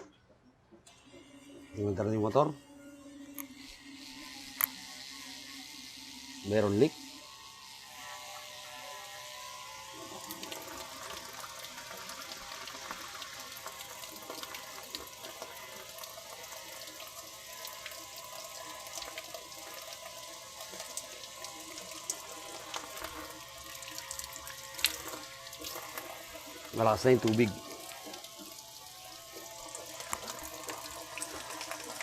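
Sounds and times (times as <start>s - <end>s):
pump humming: 0.8s - 32.0s
water running into washing machine: 9.9s - 32.0s.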